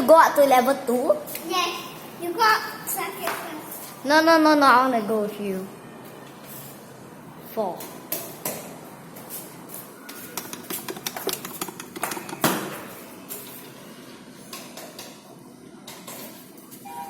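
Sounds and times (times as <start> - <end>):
clicks and knocks: 10.4 - 12.8.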